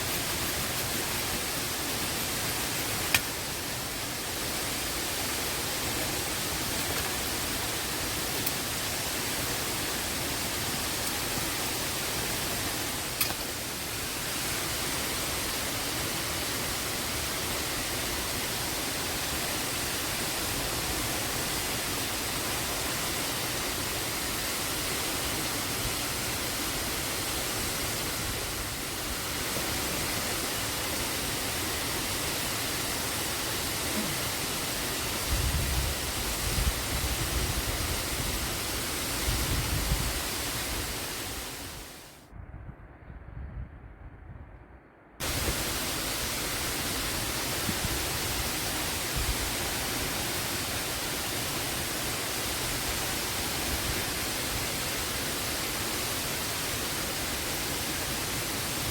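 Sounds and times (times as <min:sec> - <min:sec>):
waterfall roaring: 0:00.0 - 0:42.2, 0:45.2 - 0:58.9.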